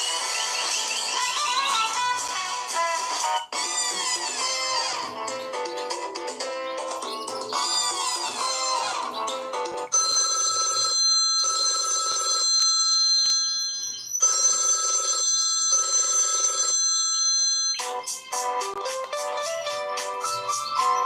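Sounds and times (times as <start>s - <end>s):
musical ringtone: 0.0s - 21.0s
telephone bell ringtone: 9.9s - 18.3s.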